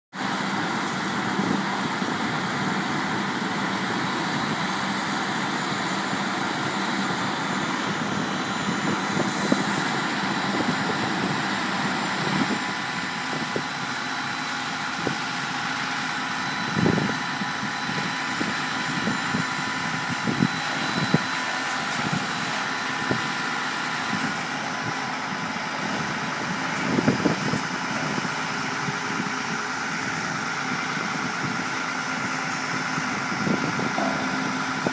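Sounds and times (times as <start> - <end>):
piling rig engine running: 0.2 - 34.9.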